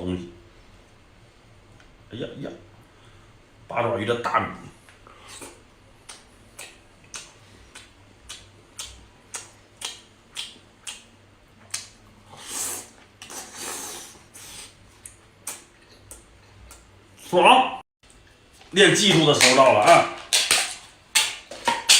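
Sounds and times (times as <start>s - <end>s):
wet chewing mouth clicks: 5.3s - 11.1s, 11.7s - 14.0s
hissing mouth sounds: 11.7s - 14.8s.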